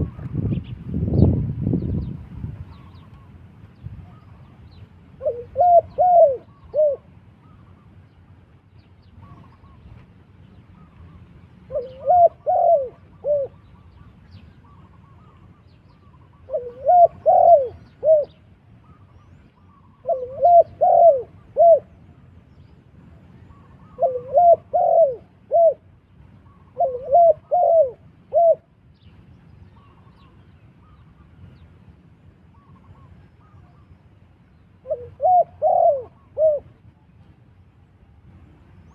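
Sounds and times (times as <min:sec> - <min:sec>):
dove cooing: 0:05.2 - 0:07.8, 0:11.7 - 0:14.0, 0:16.2 - 0:22.0, 0:23.4 - 0:25.9, 0:26.5 - 0:28.8, 0:34.8 - 0:36.8.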